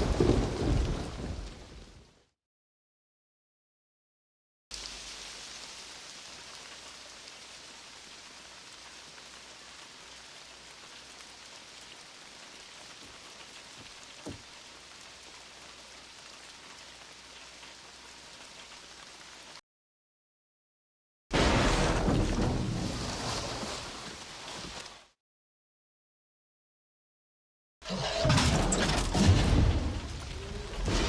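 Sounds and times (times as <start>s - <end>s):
steady rain: 0.0s - 2.4s, 4.7s - 19.6s, 21.4s - 25.2s, 28.6s - 31.0s.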